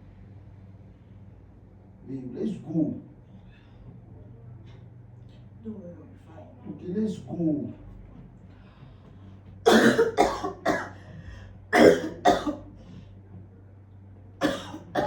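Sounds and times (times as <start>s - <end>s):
woman coughing: 9.7s - 11.0s, 11.7s - 12.7s, 14.4s - 15.0s.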